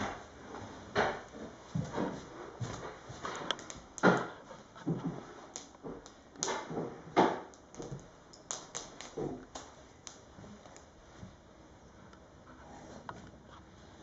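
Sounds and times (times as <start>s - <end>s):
fire crackling and popping: 3.3s - 4.4s, 5.3s - 6.8s, 7.5s - 10.9s.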